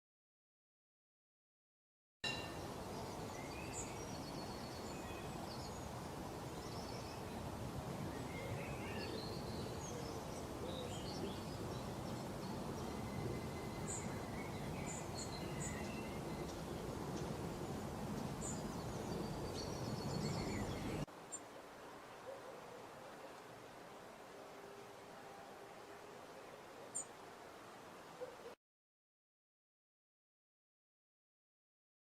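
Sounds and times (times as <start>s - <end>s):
small birds chirping: 2.3s - 21.4s
low background noise: 2.3s - 28.6s.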